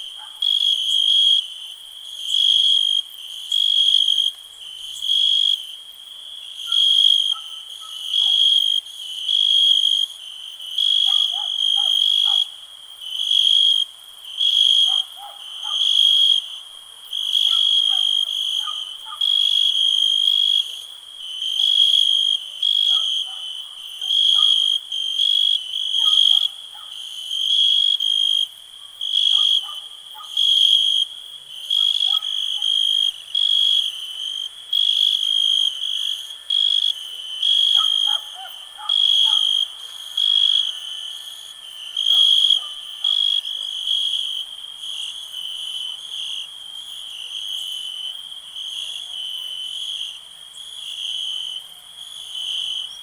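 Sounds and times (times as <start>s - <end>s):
cricket chirping in a shrill trill: 6.6s - 48.8s.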